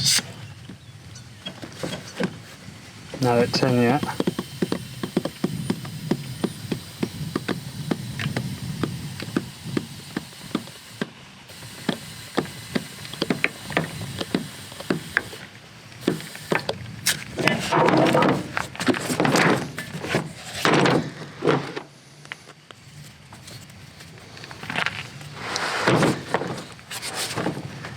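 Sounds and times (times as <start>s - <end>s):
air compressor hum: 0.0s - 0.5s, 1.1s - 22.2s, 22.8s - 27.9s
rustling clatter: 1.2s - 8.5s, 16.0s - 27.9s.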